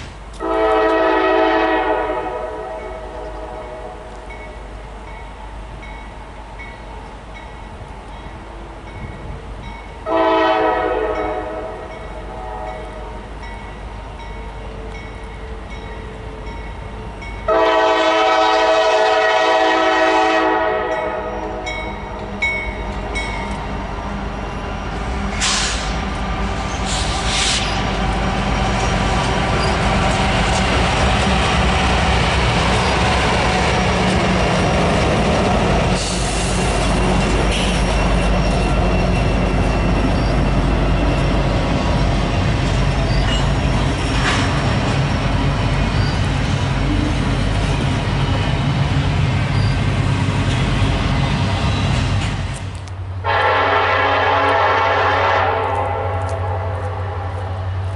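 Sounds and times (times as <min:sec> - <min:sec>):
train wheels on rails: 0:00.0 - 0:57.9
train horn blasts: 0:00.4 - 0:04.2, 0:10.0 - 0:13.3, 0:17.5 - 0:21.8, 0:53.2 - 0:57.7.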